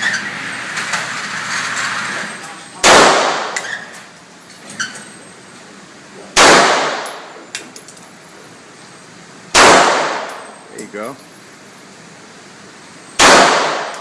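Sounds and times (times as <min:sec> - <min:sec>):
handgun shots: 0:02.8 - 0:03.7, 0:06.4 - 0:07.2, 0:09.6 - 0:10.4, 0:13.2 - 0:14.0.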